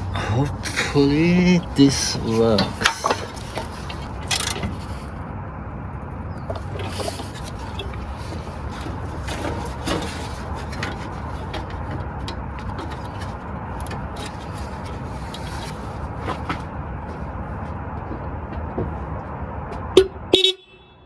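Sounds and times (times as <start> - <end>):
parts clicking and knocking: 0.0 - 5.2, 6.3 - 16.9
low background rumble: 0.0 - 20.3.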